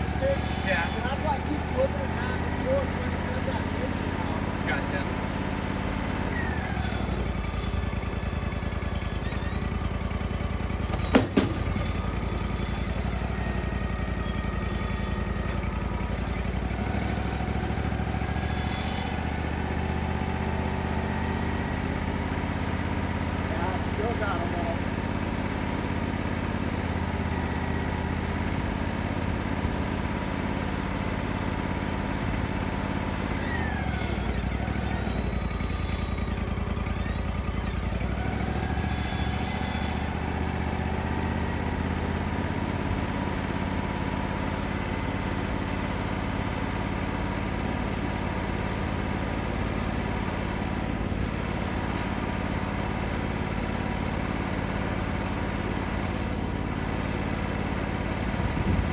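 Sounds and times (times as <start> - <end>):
sawmill engine running: 0.0 - 58.9.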